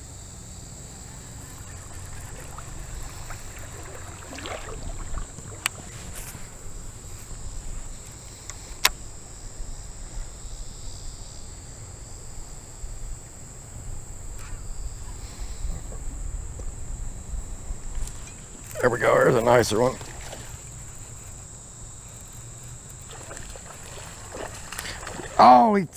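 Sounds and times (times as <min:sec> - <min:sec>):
high-pitched insect drone: 0:00.0 - 0:25.9
wind buffeting microphone: 0:01.1 - 0:08.2, 0:12.0 - 0:21.9
sharp click: 0:08.5 - 0:09.0.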